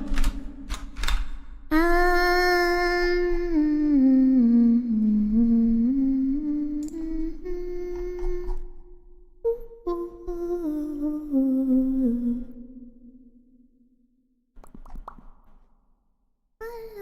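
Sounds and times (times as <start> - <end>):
sharp clicks: 0.0 - 1.6, 6.8 - 7.0
woman humming a slow tune: 1.7 - 12.8, 16.6 - 17.0.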